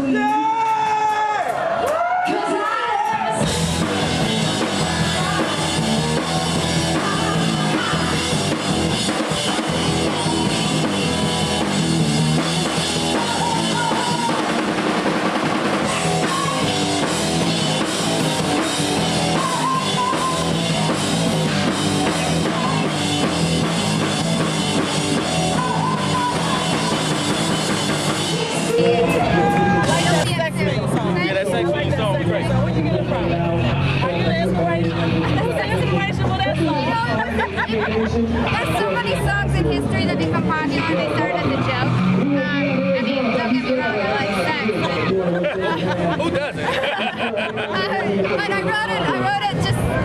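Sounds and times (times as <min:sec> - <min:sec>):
rock band playing: 0:02.9 - 0:50.0
bass drum and snare: 0:03.4 - 0:31.1.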